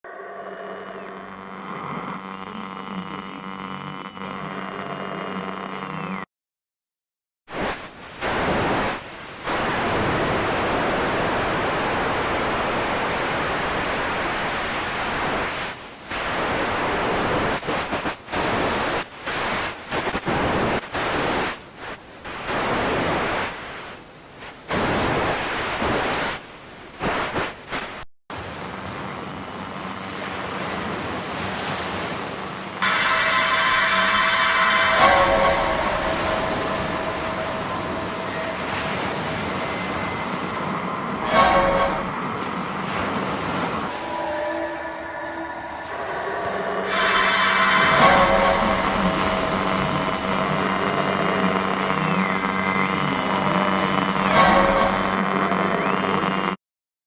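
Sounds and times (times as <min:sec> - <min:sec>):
radio static hiss: 0:07.5 - 0:28.0, 0:47.0 - 0:56.6.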